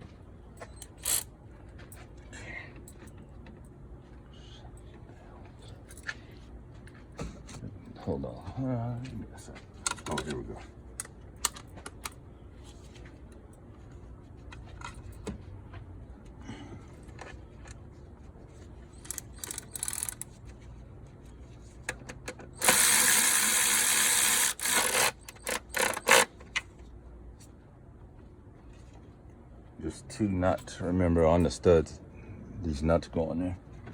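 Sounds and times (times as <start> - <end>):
loud mechanical noise bursts: 22.6 - 26.3.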